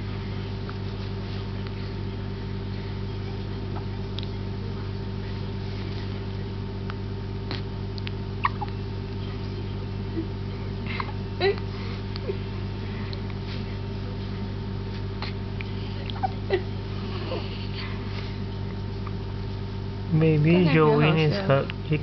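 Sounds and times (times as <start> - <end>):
steady low hum: 0.0 - 22.0
baby hiccuping: 8.4 - 8.7.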